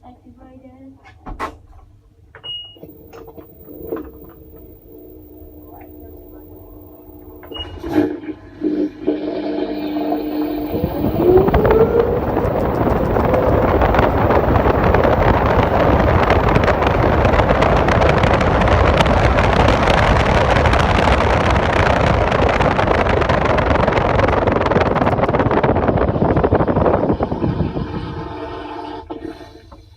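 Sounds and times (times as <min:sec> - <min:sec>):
washing machine motor whine: 0:02.7 - 0:29.9
drum rushing noise: 0:09.8 - 0:27.8.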